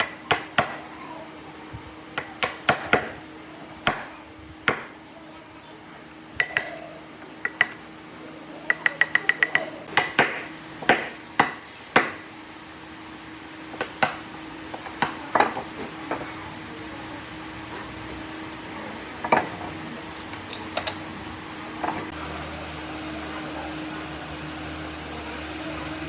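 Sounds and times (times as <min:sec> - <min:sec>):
steady low hum: 0:00.0 - 0:26.0
hand tools knocking and clinking: 0:08.7 - 0:12.2, 0:20.2 - 0:21.1.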